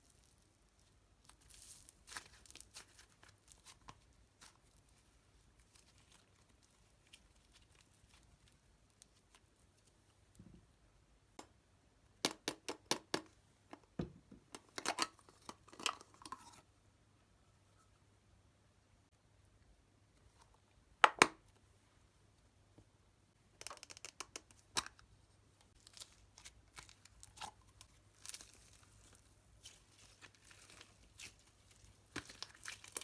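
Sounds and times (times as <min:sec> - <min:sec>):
slime being handled by hand: 0:25.8 - 0:33.0.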